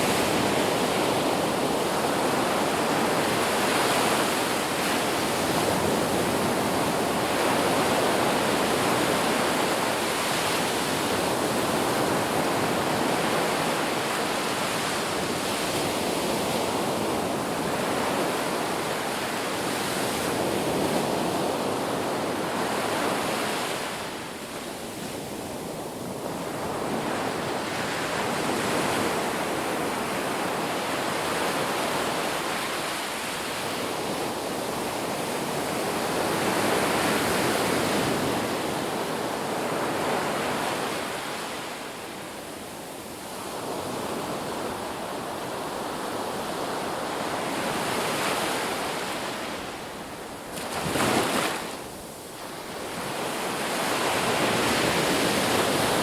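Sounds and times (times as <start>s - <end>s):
ocean surf breaking: 43.7s - 56.0s.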